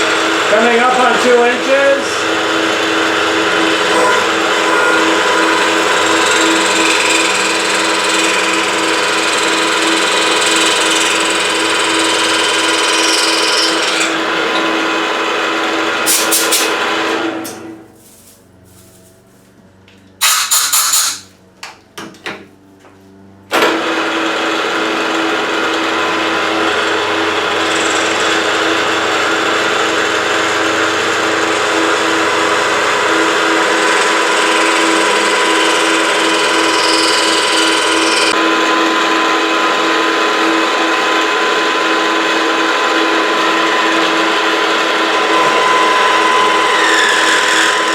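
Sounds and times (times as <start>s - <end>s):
constant machine tone: 0.0s - 14.9s, 26.1s - 47.9s
milling machine cutting: 0.0s - 17.7s, 24.2s - 38.4s, 39.8s - 47.9s
sharp metal clanks: 20.2s - 21.3s.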